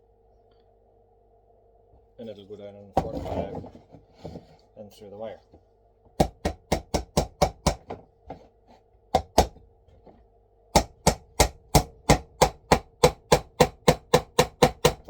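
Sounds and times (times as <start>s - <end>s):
hammer driving nail into wood: 6.2s - 8.0s, 9.2s - 9.6s, 10.7s - 15.0s.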